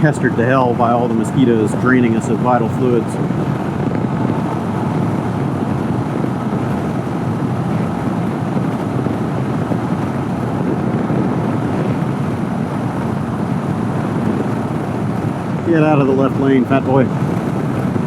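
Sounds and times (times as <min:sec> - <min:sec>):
road noise: 0:00.0 - 0:18.0
wind rush over microphone: 0:00.0 - 0:18.0
motorcycle engine: 0:01.7 - 0:18.0.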